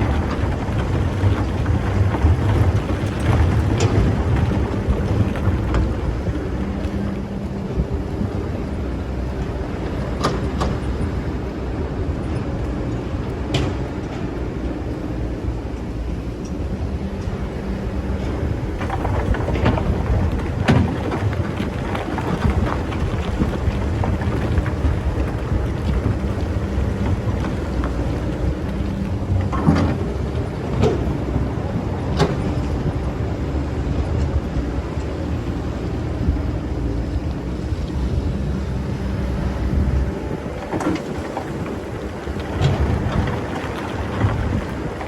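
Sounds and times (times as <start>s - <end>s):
bucket crunching and knocking: 0.0s - 7.3s, 18.5s - 31.2s
diesel engine running: 0.0s - 45.0s.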